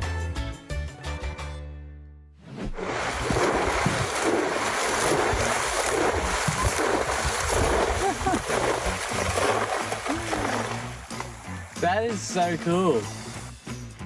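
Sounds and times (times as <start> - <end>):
background music: 0.0 - 2.0, 8.8 - 14.0
ocean waves breaking: 2.5 - 13.4
wind buffeting microphone: 2.7 - 11.8.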